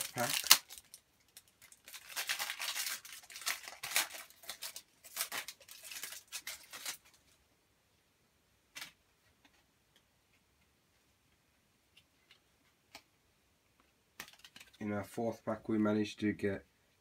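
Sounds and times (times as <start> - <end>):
wrapper tearing and crinkling: 0.0 - 7.2.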